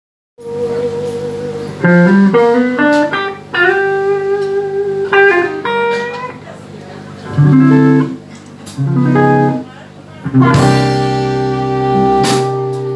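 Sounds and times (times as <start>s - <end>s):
blues band playing live: 0.4s - 12.9s
lead guitar: 0.4s - 12.9s.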